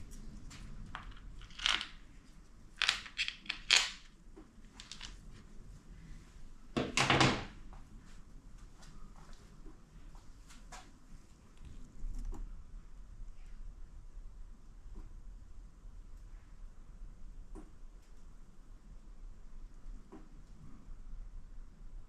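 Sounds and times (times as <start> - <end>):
metal parts clinking: 0.9 - 2.0, 2.8 - 4.1, 4.8 - 5.2.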